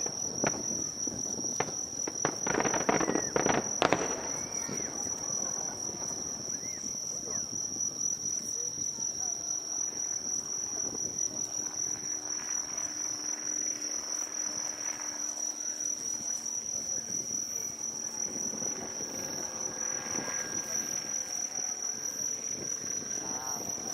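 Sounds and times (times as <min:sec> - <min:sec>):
insects trilling: 0:00.0 - 0:23.9
murmur of crowd voices: 0:02.6 - 0:11.9.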